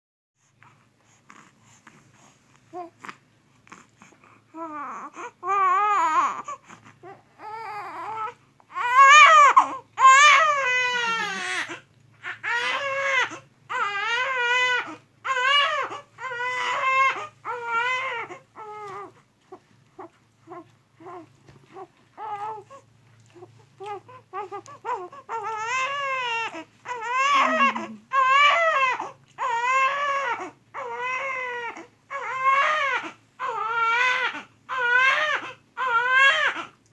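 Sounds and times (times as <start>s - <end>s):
baby crying: 4.6s - 19.1s, 23.9s - 36.7s.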